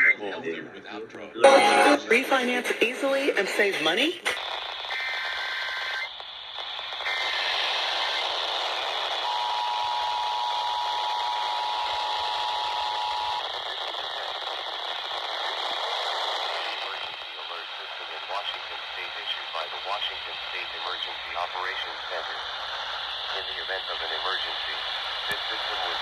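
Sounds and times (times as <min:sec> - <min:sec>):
two-tone attention signal: 0:01.4 - 0:02.1
data tone burst: 0:01.4 - 0:02.4
radio hiss: 0:01.4 - 0:26.0.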